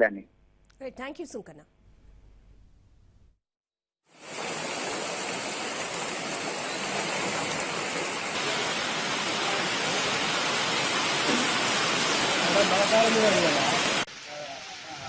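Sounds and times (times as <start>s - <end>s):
heavy rain pouring: 4.2s - 15.0s.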